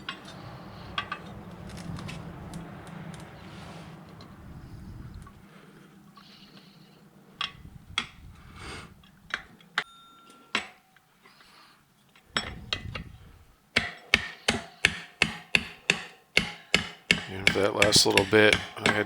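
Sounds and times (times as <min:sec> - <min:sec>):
hammer blows: 0:00.0 - 0:05.4, 0:13.8 - 0:19.0
tire levers clinking on rim: 0:00.0 - 0:05.4, 0:07.3 - 0:14.6.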